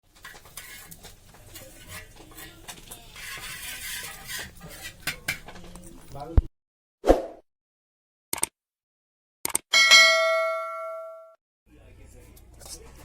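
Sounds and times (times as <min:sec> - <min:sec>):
metal utensils scraping a pan: 0:00.1 - 0:05.5
hissing scrape: 0:00.2 - 0:05.1.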